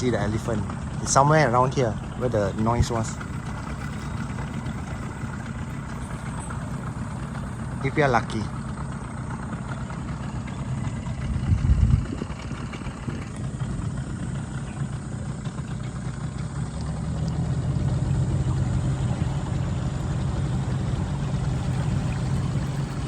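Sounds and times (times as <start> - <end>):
loud low rumble: 0.0 - 23.0
outboard motor running: 0.0 - 23.0.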